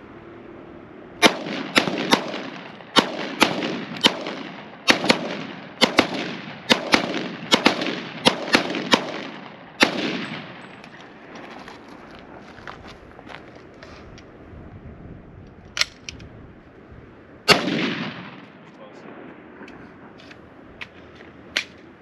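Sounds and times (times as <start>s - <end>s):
gunshots with echoing tails: 1.2s - 11.4s, 17.5s - 20.2s.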